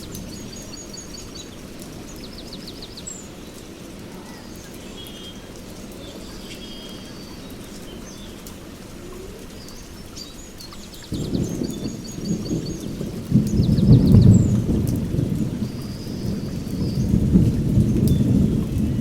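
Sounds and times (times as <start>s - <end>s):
heavy rain: 0.0s - 19.0s
birds chirping and trilling: 9.4s - 14.7s
thunder rumble: 11.1s - 19.0s.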